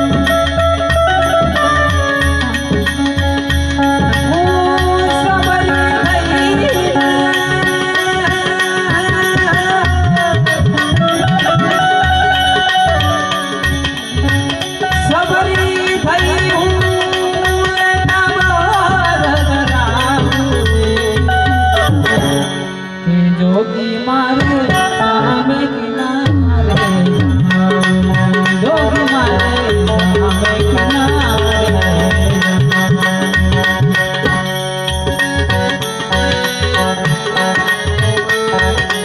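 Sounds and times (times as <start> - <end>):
harmonium melody and drone: 0.0 - 39.0
tabla rhythm: 0.0 - 39.0
person singing: 4.2 - 12.0.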